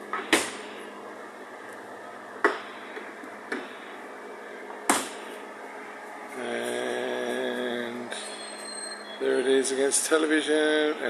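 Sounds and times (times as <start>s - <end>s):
steady background hum: 0.0s - 11.0s
sharp knocks from fridge: 4.9s - 5.1s.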